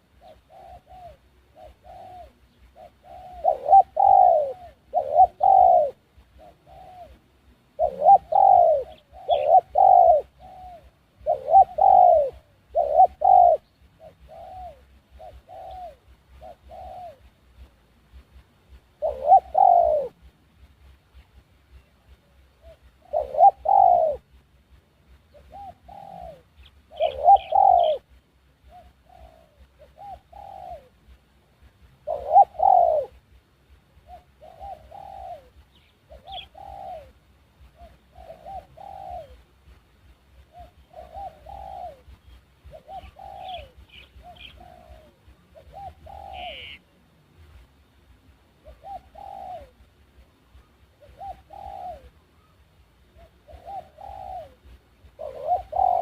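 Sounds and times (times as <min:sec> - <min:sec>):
dove cooing: 0:00.0 - 0:17.7, 0:18.9 - 0:20.3, 0:21.1 - 0:24.4, 0:25.2 - 0:31.2, 0:32.0 - 0:33.2, 0:34.0 - 0:39.6, 0:40.3 - 0:46.9, 0:48.5 - 0:56.0
small bird chirping: 0:07.8 - 0:17.2, 0:25.2 - 0:30.9, 0:34.0 - 0:39.5, 0:40.4 - 0:47.0.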